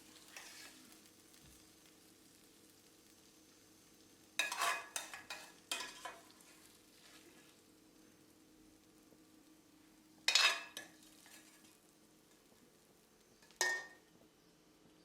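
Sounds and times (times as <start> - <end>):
metal spoon clanking on cookware: 4.4 - 6.2, 10.3 - 11.6, 13.5 - 14.0.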